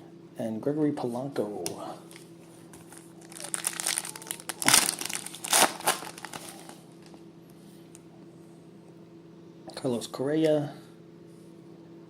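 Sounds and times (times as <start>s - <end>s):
foil wrapper crinkling: 2.9s - 7.1s.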